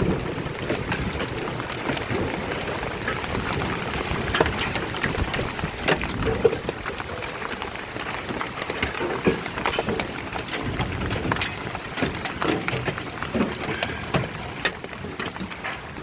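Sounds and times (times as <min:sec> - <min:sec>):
hail striking hard surfaces: 0:00.0 - 0:16.0.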